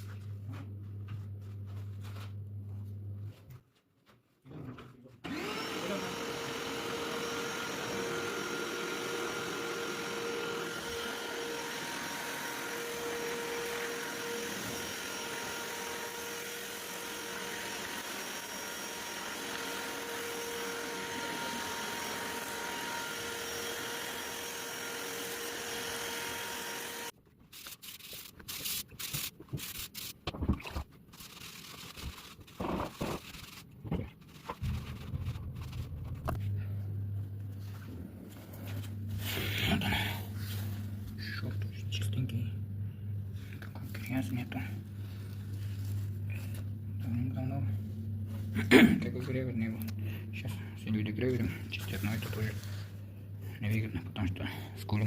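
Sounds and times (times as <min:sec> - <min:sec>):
vacuum cleaner whining: 0:05.2 - 0:27.2, 0:50.8 - 0:53.1.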